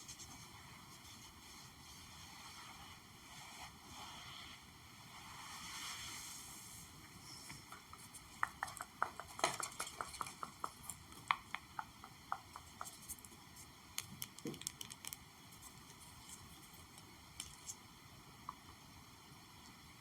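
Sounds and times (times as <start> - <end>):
light sharp taps: 7.5 - 13.4.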